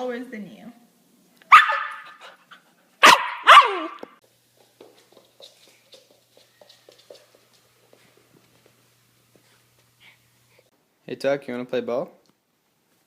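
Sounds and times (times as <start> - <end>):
dog barking: 1.5 - 2.3, 3.0 - 4.0.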